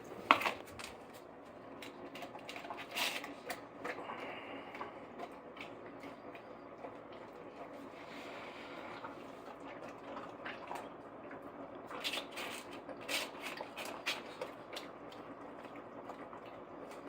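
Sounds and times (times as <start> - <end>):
dog eating from bowl: 0.0 - 17.0.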